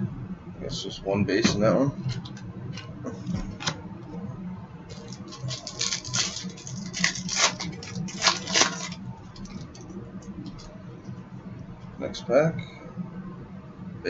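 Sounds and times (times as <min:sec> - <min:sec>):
card wrapper crinkling and tearing: 0:04.9 - 0:09.8
cards rustling: 0:04.9 - 0:09.9.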